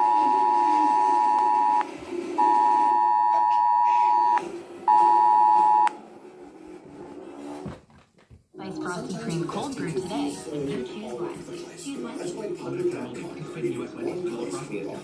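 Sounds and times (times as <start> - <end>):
two-pitch emergency alert tone: 0.0 - 5.9.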